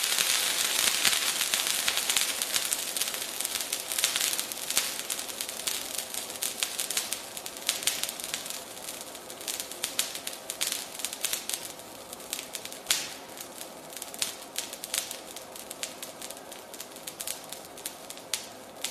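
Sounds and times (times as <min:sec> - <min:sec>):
chemical mixture burning: 0:00.0 - 0:18.9.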